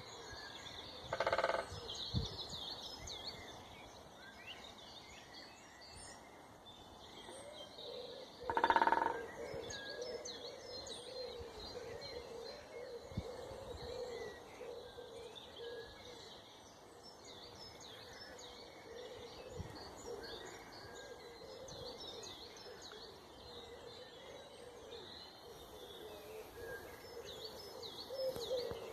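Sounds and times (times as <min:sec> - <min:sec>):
birds chirping and singing: 0:00.0 - 0:28.9
low repeating bird call: 0:01.1 - 0:01.7, 0:08.4 - 0:09.7.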